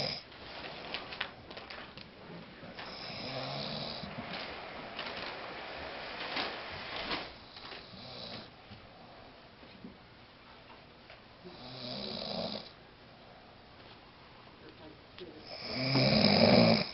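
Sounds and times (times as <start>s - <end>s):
man snoring: 0.0s - 0.2s, 2.8s - 4.2s, 11.5s - 12.8s, 15.4s - 16.9s.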